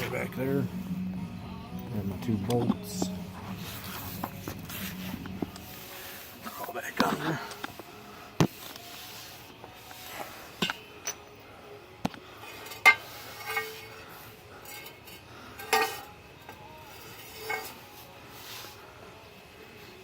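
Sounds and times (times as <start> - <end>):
metal bar and bolts clinking: 10.6 - 11.4, 12.5 - 14.0, 14.6 - 17.8.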